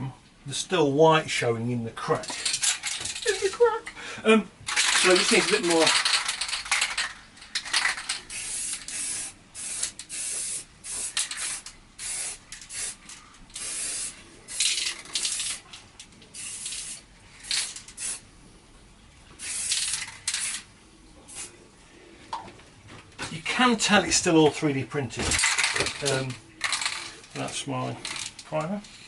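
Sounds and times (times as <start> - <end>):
spray paint hissing in short bursts: 8.0 - 15.6, 16.3 - 18.2, 19.4 - 20.7, 21.3 - 21.5.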